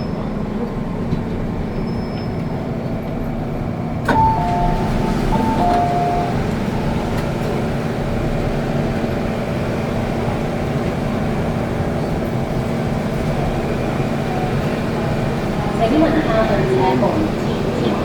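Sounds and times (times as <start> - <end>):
train running rumble: 0.0 - 18.0
two-note chime: 4.2 - 6.4.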